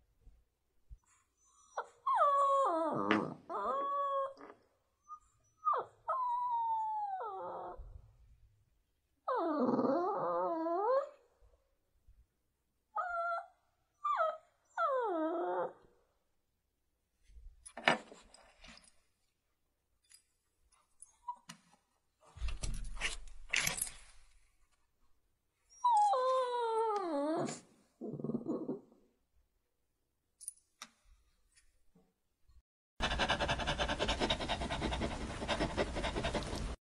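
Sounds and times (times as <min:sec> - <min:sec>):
dog whining: 0:01.4 - 0:08.0, 0:09.3 - 0:11.3, 0:13.0 - 0:15.9, 0:25.7 - 0:28.9.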